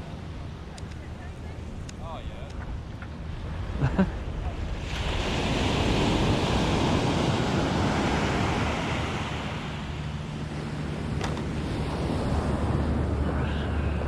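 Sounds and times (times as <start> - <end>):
ocean surf breaking: 3.3 - 14.0.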